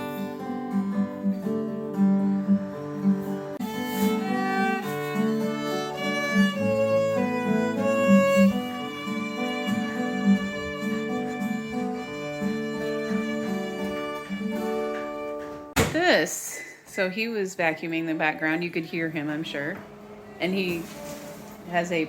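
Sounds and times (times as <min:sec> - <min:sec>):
plucked strings: 0:02.0 - 0:15.7
violin melody: 0:02.5 - 0:15.7.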